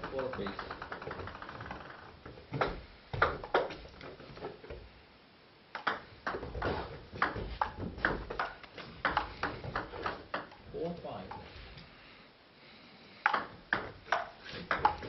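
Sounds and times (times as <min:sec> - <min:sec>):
table tennis ball bouncing: 0:00.0 - 0:03.8, 0:05.7 - 0:10.6, 0:13.2 - 0:15.0
table tennis rally: 0:00.0 - 0:04.6, 0:05.7 - 0:11.6, 0:13.2 - 0:15.0.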